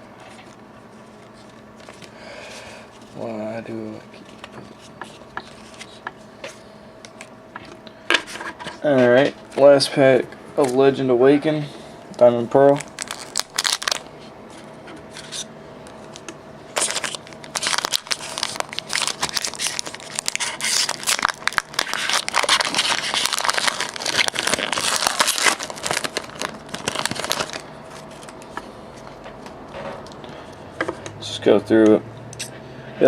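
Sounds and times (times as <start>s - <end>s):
foil wrapper tearing and crinkling: 12.7s - 14.1s, 16.8s - 28.4s.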